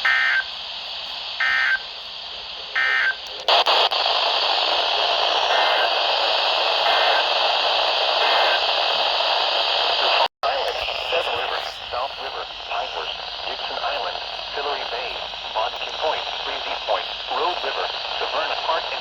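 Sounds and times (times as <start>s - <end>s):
steady radio hiss: 0.0s - 19.0s
harsh digital data bursts: 1.4s - 2.0s, 6.8s - 7.3s, 8.2s - 9.0s.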